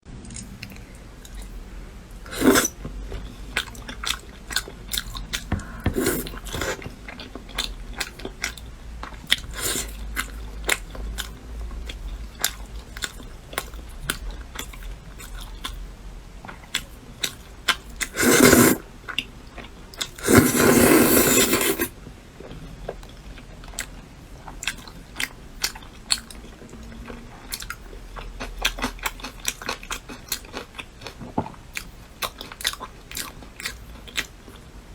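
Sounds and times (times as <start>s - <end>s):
crunchy chewing: 16.5s - 34.6s.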